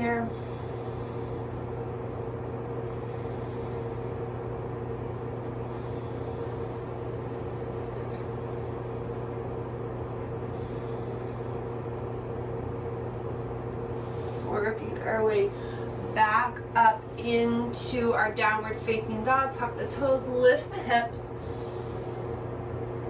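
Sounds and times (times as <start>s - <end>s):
steady mechanical hum: 0.0s - 23.0s
soft breaths: 0.3s - 1.9s, 2.9s - 4.4s, 5.5s - 8.8s, 10.3s - 11.9s, 13.8s - 22.4s.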